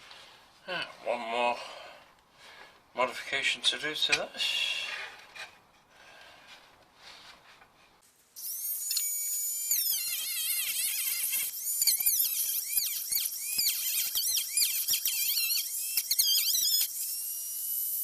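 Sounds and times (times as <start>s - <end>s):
rotary tool whining: 8.4s - 18.0s.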